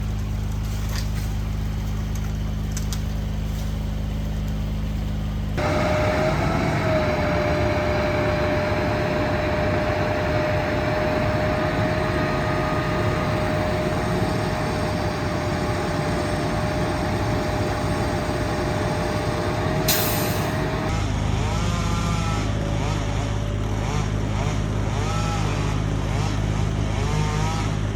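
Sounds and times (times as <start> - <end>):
heavy machinery whining and rushing: 5.6 - 21.1.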